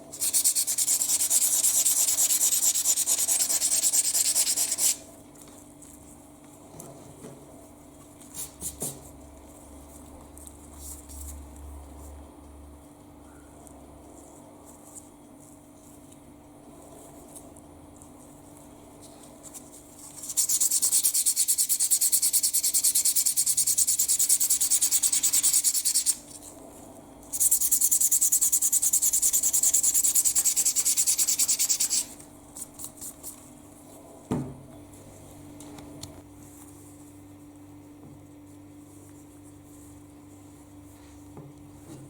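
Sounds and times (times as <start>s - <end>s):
knock: 34.3s - 34.6s.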